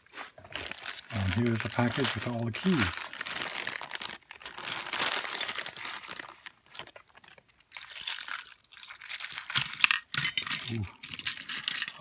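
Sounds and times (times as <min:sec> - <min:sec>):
metal keys jangling: 0:07.7 - 0:12.0.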